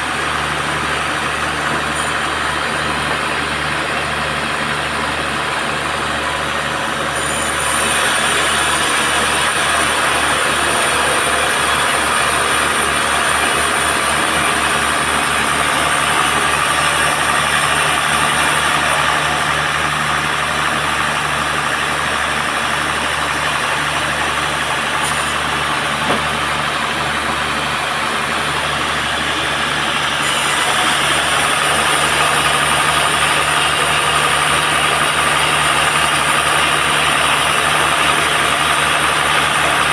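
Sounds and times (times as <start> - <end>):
band sawmill sawing a log: 0.0 - 39.9.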